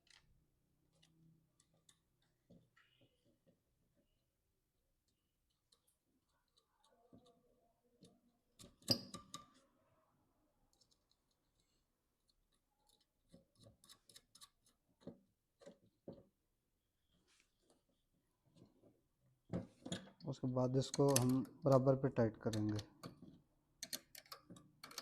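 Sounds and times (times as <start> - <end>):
small metal nuts clicking: 20.8 - 21.5, 23.8 - 25.0.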